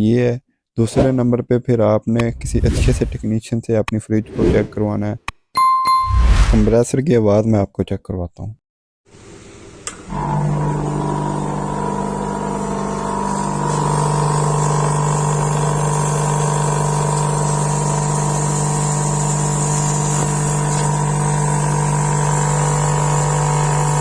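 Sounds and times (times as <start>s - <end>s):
refrigerator compressor humming: 9.6s - 24.0s
compressor click: 9.8s - 10.2s.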